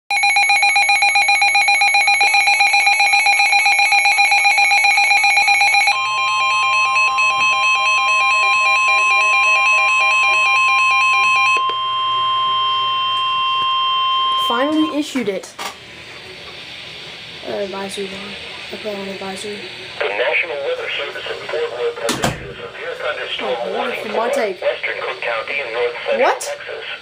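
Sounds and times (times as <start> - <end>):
steady piercing tone: 0.1 - 15.1
warbling electronic alarm: 0.1 - 15.1.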